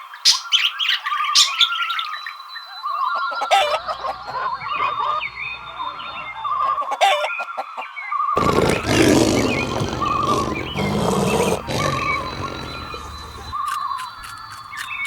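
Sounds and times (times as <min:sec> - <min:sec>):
fowl clucking: 0:03.0 - 0:07.9.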